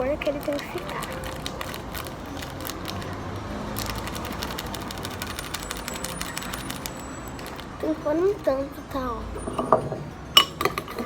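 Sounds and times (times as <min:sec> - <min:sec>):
spoon clicking and scraping plastic: 0:00.0 - 0:07.9, 0:09.5 - 0:11.0.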